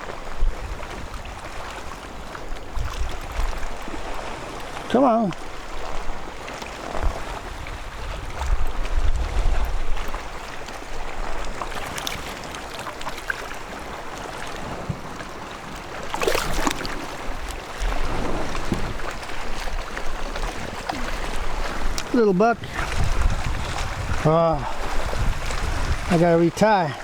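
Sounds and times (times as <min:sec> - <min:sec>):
wind rumbling on microphone: 0:00.0 - 0:26.7
water lapping around a kayak: 0:00.0 - 0:27.0
splash: 0:11.3 - 0:26.3.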